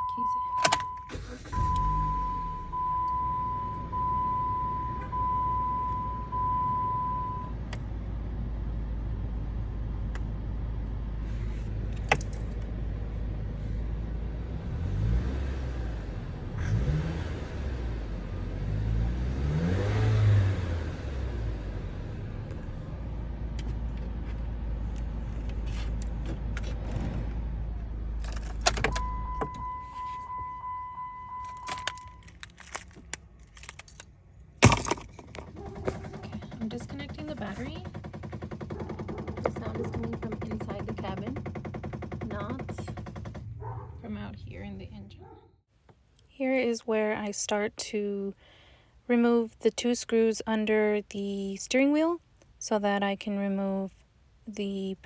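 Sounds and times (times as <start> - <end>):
car warning chime dinging: 0.0 - 7.6, 28.5 - 32.8
car engine running: 0.7 - 45.7.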